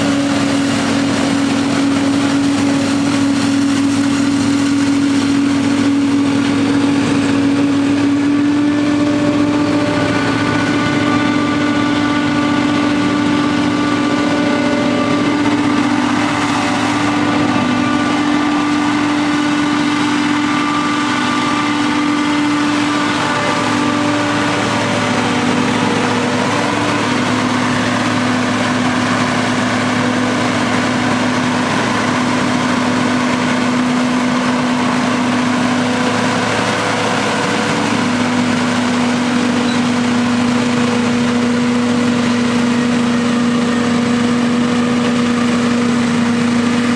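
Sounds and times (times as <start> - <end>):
harvesting machine diesel engine hum: 0.0 - 46.9
machine whine: 0.0 - 46.9.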